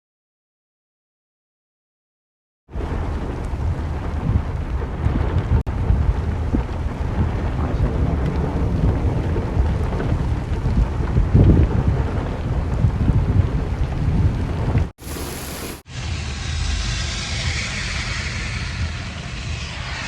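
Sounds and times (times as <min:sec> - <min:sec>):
heavy rain: 0:02.7 - 0:15.8
thunder rumble: 0:02.7 - 0:20.0
wind: 0:02.7 - 0:20.0.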